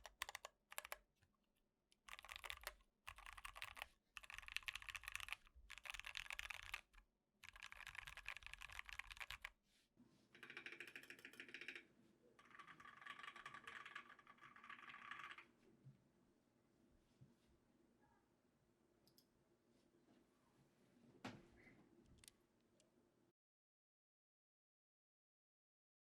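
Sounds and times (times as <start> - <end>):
fast typing on mechanical keyboard: 0.0 - 1.0, 2.0 - 9.5, 12.4 - 15.4.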